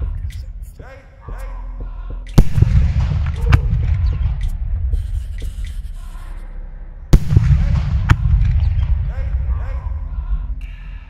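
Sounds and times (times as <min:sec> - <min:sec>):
low rumble with crackling: 0:00.0 - 0:11.0
loud bangs: 0:02.4 - 0:05.2, 0:07.1 - 0:10.1.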